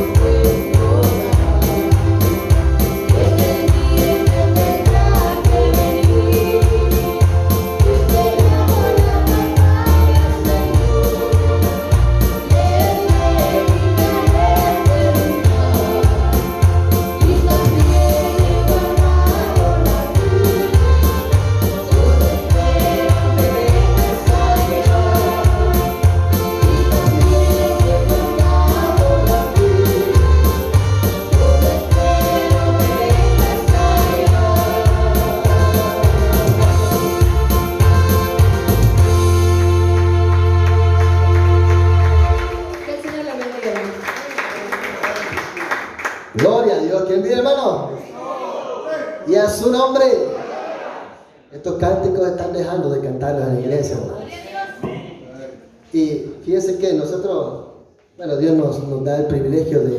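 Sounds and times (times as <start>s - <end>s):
electronic keyboard with bass beat: 0.0s - 42.4s
person singing: 0.0s - 42.5s.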